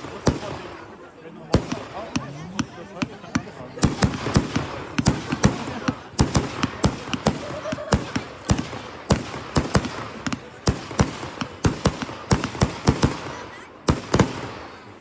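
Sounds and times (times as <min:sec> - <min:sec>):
fireworks banging: 0:00.0 - 0:15.0
fireworks crackling hiss: 0:03.8 - 0:15.0.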